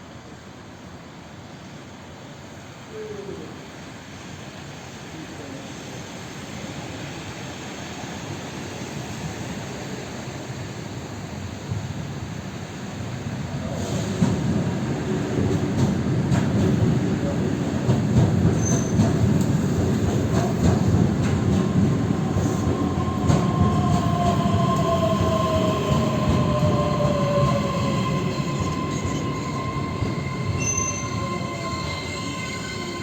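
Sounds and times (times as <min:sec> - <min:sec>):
train wheels rumbling on rails: 0:06.2 - 0:33.0
steady high tone: 0:21.3 - 0:33.0.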